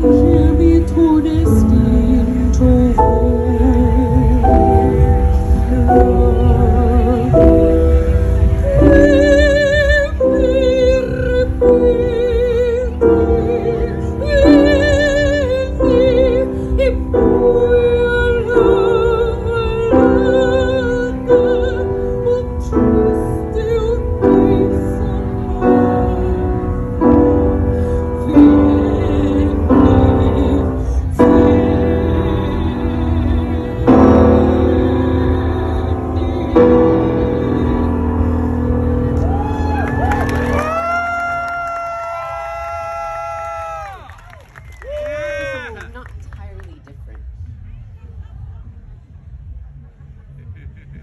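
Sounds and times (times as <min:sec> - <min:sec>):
operatic singing: 0:00.0 - 0:40.8
heavy bass: 0:00.0 - 0:41.4
piano accompaniment: 0:00.0 - 0:44.0.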